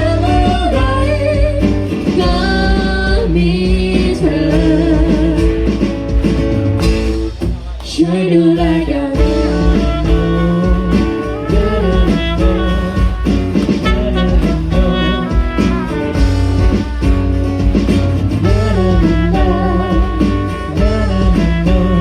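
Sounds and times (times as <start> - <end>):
bass: 0.0 - 22.0
steady drum beat: 0.0 - 22.0
melodic lead line: 9.2 - 22.0.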